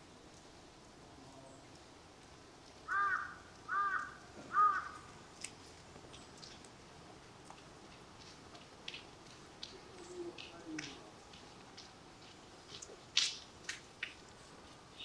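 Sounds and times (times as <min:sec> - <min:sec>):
crow cawing: 0:02.9 - 0:05.1.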